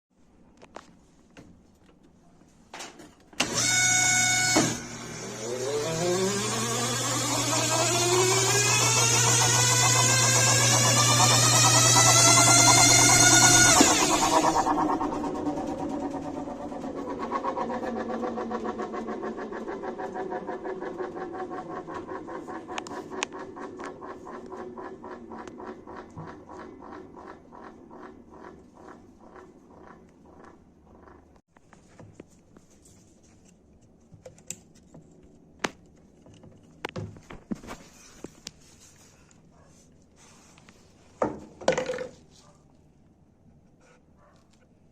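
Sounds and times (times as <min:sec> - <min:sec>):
washing machine motor whine: 0:03.4 - 0:31.3.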